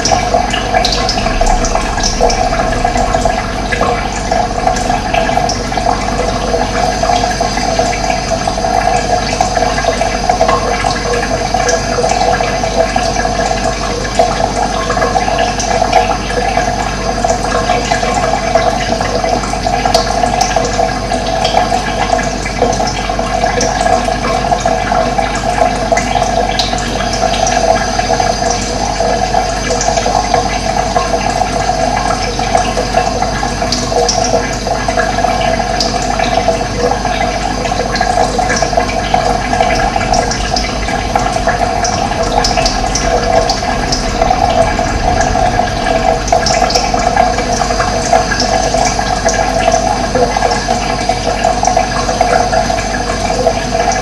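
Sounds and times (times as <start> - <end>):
running water: 0.0 - 54.0.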